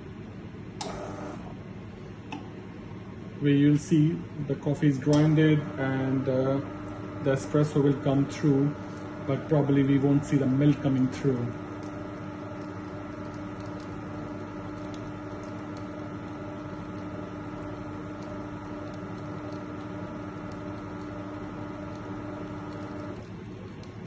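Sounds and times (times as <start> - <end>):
coffee machine motor hum: 0.0 - 24.0
coffee grinding: 5.6 - 24.0.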